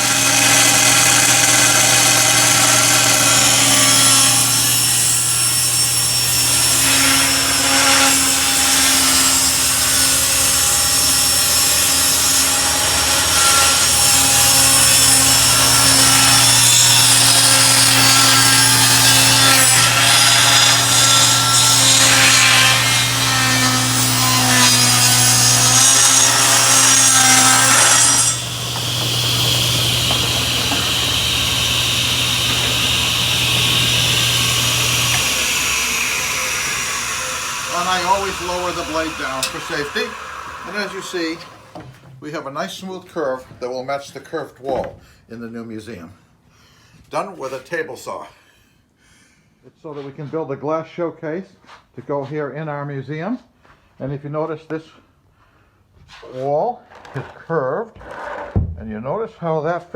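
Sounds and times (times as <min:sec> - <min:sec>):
saw blade grinding through wood: 0:00.0 - 0:41.8
table saw motor running: 0:00.0 - 0:41.8.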